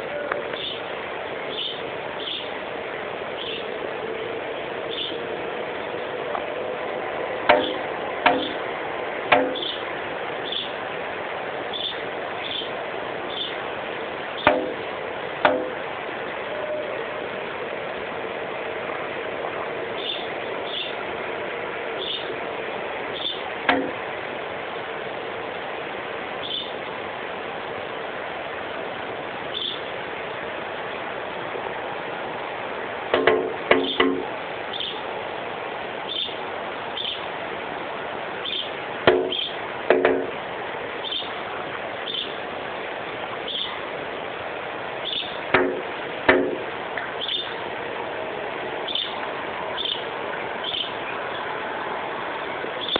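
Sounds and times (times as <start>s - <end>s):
steady hiss: 0.0s - 52.9s
bird tapping on window glass: 14.4s - 14.8s
window pane ringing: 14.4s - 15.8s.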